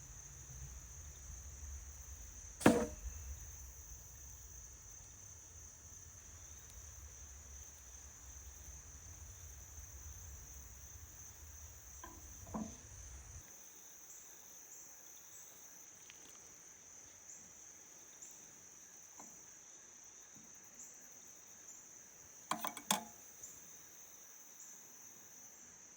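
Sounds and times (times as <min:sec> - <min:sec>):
low rumble: 0:00.0 - 0:13.4
crickets chirring: 0:00.0 - 0:25.9
light knocks: 0:02.6 - 0:03.4, 0:12.0 - 0:13.3.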